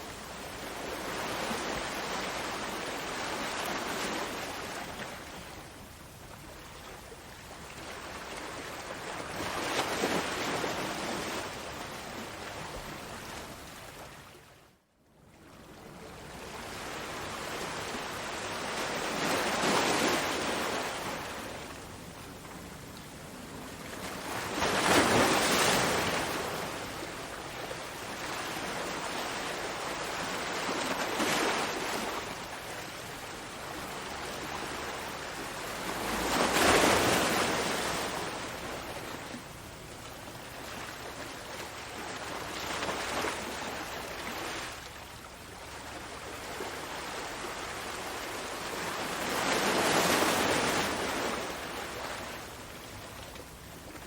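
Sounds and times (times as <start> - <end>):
ocean waves breaking on shore: 0.0 - 14.6, 15.3 - 54.0.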